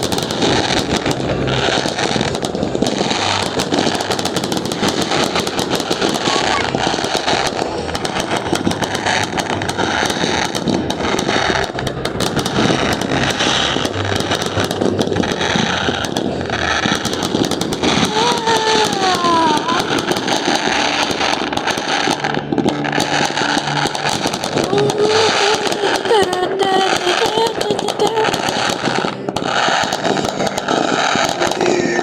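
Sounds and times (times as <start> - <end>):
falling firework whistles: 0.0 - 32.0
fireworks cracking and banging: 0.0 - 32.0.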